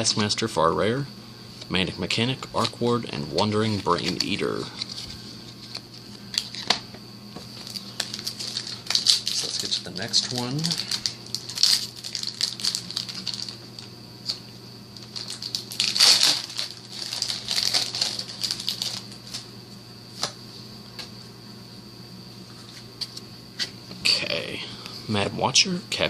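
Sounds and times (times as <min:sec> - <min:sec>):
steady low hum: 0:00.0 - 0:26.0
foil pack crinkling and tearing: 0:03.5 - 0:06.8, 0:07.5 - 0:14.4, 0:15.0 - 0:19.5.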